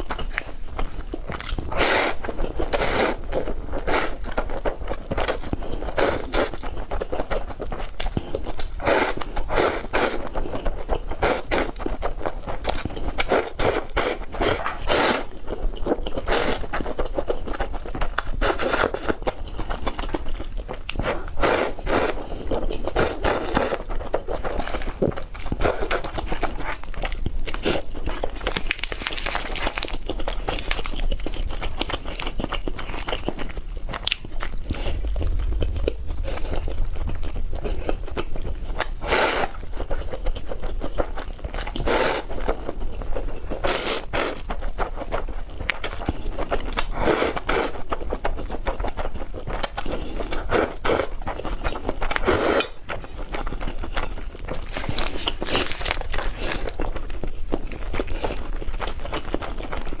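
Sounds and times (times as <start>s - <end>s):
wet chewing and smacking: 0.0s - 60.0s
loud noodle slurps: 1.7s - 3.2s, 13.2s - 15.3s, 21.1s - 22.3s, 39.0s - 39.6s, 41.7s - 42.4s, 43.6s - 44.4s, 47.0s - 47.8s, 50.3s - 51.2s, 52.2s - 52.8s
small crackles: 21.9s - 60.0s.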